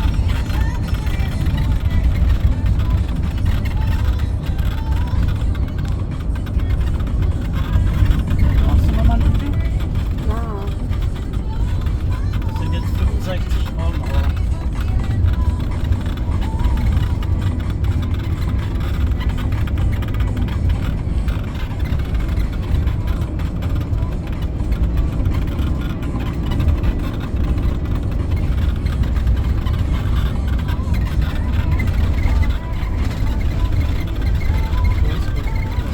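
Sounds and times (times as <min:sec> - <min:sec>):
faint squeaks: 0:00.0 - 0:35.9
motorhome driving rumble: 0:00.0 - 0:35.9.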